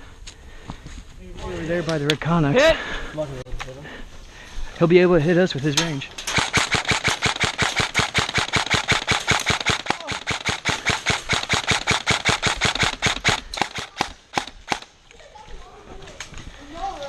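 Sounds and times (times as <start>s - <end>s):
airsoft gun firing: 6.3s - 14.9s.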